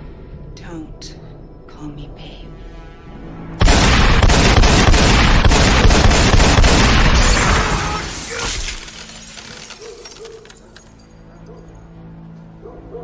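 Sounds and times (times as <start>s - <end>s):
explosion boom with sharp cracks: 3.6s - 8.1s.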